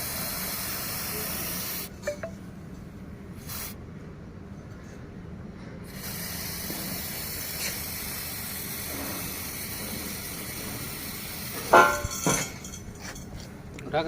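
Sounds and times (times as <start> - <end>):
aerosol can spraying: 6.0 - 11.7.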